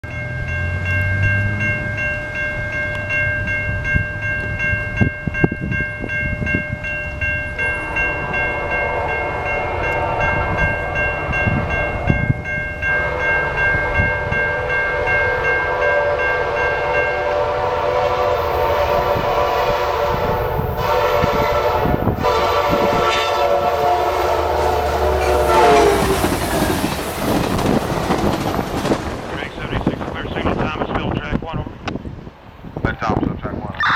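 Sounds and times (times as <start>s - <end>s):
train rumble and wheel clatter: 0.1s - 33.7s
train horn chord blasts: 7.1s - 26.8s.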